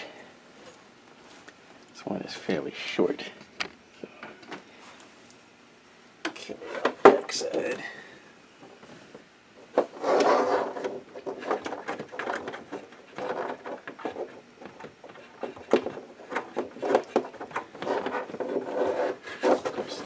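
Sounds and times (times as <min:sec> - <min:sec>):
rubbing and scraping: 0:08.9 - 0:20.0.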